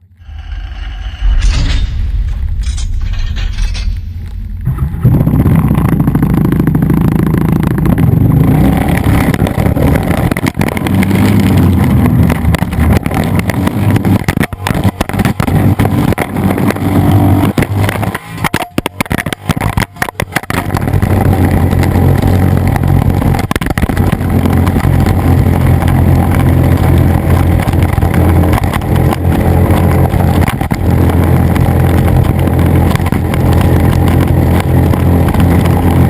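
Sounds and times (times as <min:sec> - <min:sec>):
muffled engine running: 0:00.0 - 0:36.0
knocks and rattles: 0:00.8 - 0:05.4.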